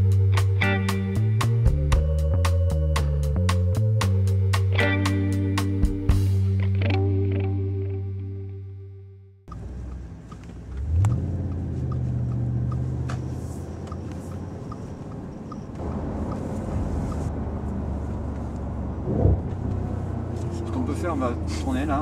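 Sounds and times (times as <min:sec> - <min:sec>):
light regular ticking: 0:09.5 - 0:16.5
car engine revving: 0:09.5 - 0:22.0.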